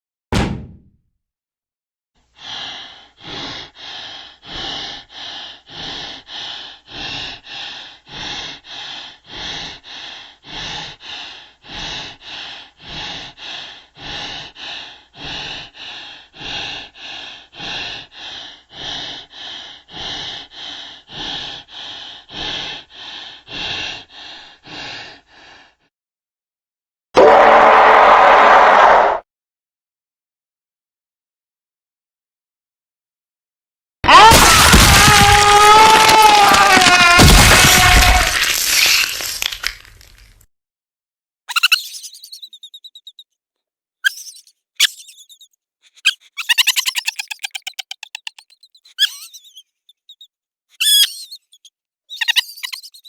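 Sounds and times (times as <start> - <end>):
harsh gasping breaths: 2.3 - 25.9, 34.1 - 40.4, 41.5 - 43.2, 44.0 - 53.0.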